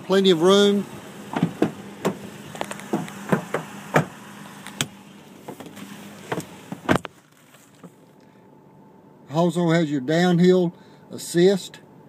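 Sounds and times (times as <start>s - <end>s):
clicks and knocks in truck cab: 1.3s - 4.2s.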